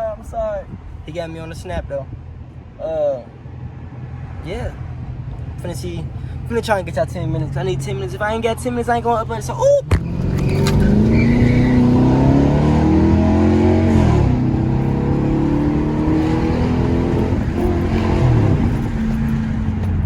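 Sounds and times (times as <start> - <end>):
car exhaust accelerating hard: 4.8 - 20.0.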